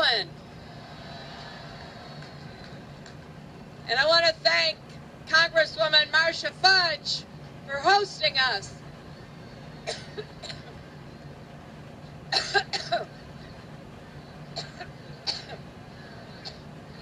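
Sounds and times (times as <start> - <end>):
woman clearing throat: 9.8 - 10.7, 12.4 - 13.2, 14.6 - 15.6
woman coughing: 9.8 - 10.8, 12.3 - 13.2, 14.6 - 15.6.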